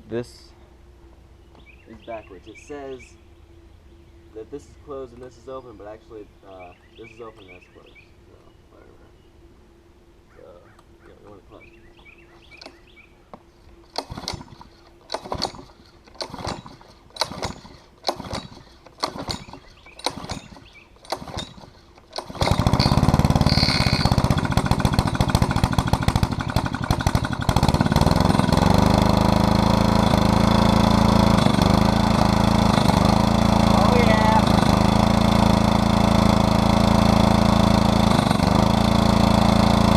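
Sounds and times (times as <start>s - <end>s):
pull starter cord pulls: 13.9s - 39.9s
small engine running loudly: 13.9s - 39.9s.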